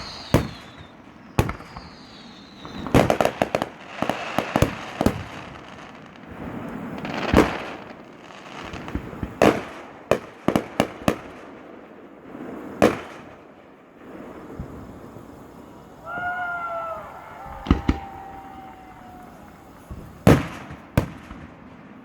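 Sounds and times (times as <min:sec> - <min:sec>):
firework hissing: 0:00.0 - 0:10.0, 0:14.0 - 0:21.2
firework shells bursting: 0:00.0 - 0:11.3, 0:17.1 - 0:21.6
small firework pops: 0:00.0 - 0:11.3, 0:17.5 - 0:18.4, 0:19.1 - 0:21.8.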